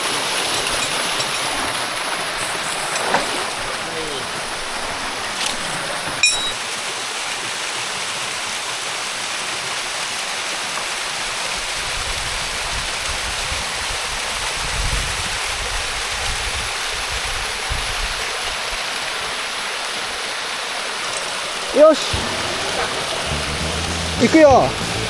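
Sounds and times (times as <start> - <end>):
waterfall rushing: 20.6 - 25.0
low rumbling: 22.1 - 25.0.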